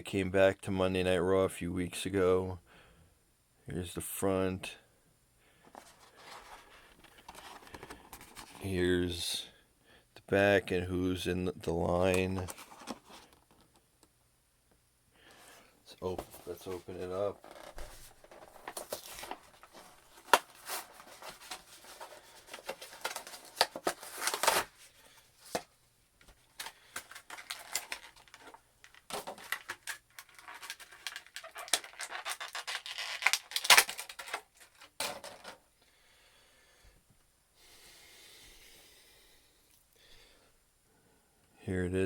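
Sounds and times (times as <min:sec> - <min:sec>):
packaging rustling and crackling: 0:05.7 - 0:08.6, 0:16.0 - 0:35.6.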